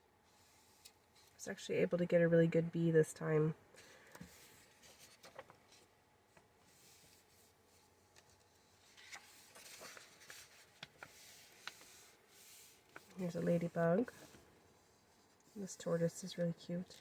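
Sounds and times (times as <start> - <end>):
paper pages rustling: 4.2 - 15.6.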